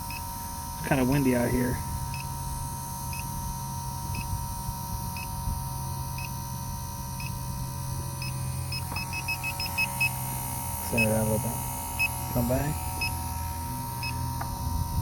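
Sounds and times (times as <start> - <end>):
leak detector beeping: 0.0 - 15.0
low hum: 3.8 - 15.0
wind rumble on microphone: 14.2 - 15.0.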